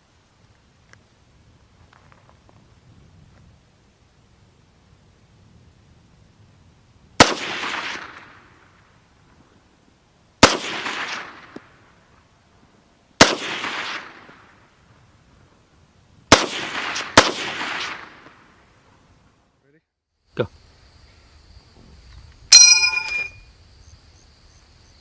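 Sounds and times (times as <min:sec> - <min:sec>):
gunshots with echo: 0:16.3 - 0:18.2.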